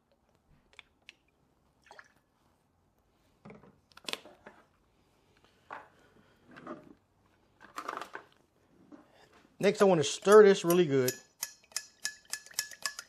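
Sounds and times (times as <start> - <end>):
glassware and bar tools clinking: 10.1 - 13.0.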